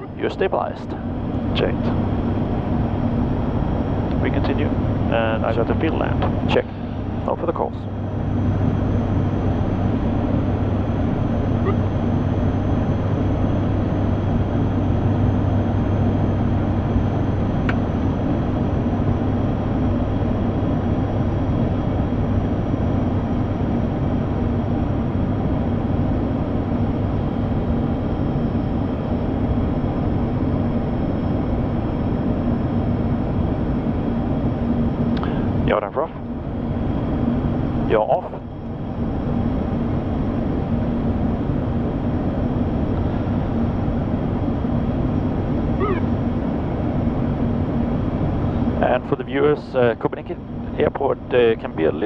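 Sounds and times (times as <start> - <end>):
constant low hum: 0.0 - 52.0
turboprop engines droning: 0.0 - 52.0.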